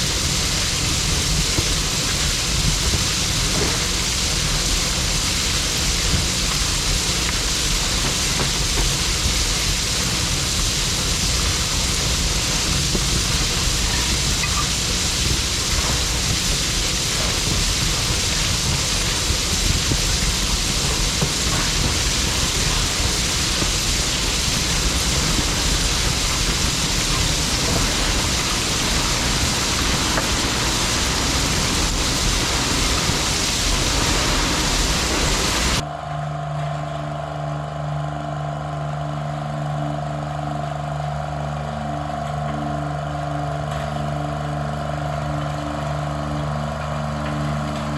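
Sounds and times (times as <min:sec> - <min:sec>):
loud rushing noise: 0:00.0 - 0:35.9
engine idling: 0:00.0 - 0:47.9.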